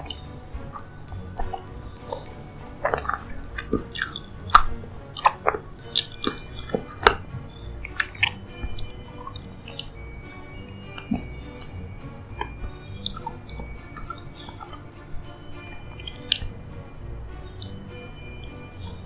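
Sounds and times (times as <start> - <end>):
soft background music: 0.0 - 19.0
person chewing wetly: 1.4 - 7.2, 8.0 - 9.9, 12.4 - 14.8.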